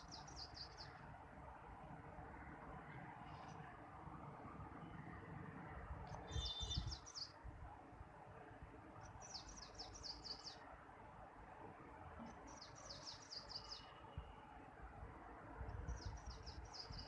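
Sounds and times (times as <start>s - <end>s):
small bird singing: 0.0s - 1.0s, 6.1s - 7.4s, 9.0s - 10.6s, 12.3s - 14.2s, 15.9s - 17.0s.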